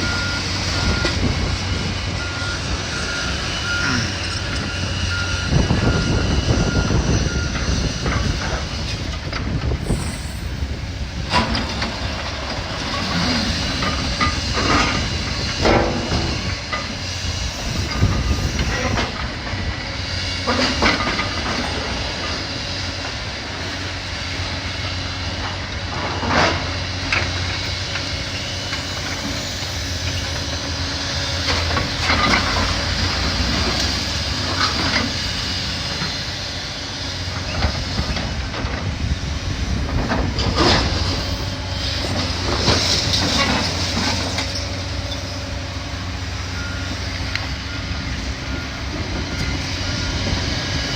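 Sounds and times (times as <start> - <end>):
diesel engine running: 0.0 - 50.9.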